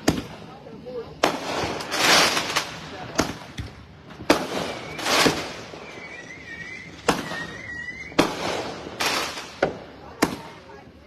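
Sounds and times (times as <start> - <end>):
fireworks bangs with echo: 0.0 - 11.0.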